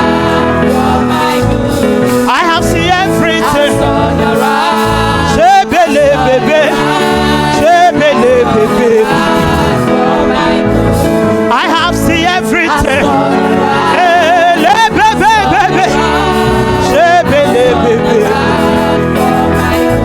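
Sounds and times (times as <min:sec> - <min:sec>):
band accompaniment: 0:00.0 - 0:20.0.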